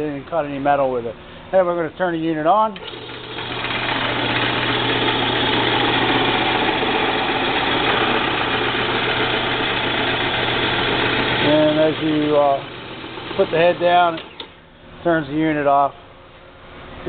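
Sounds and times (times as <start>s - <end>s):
bandsaw motor humming: 2.8s - 14.5s.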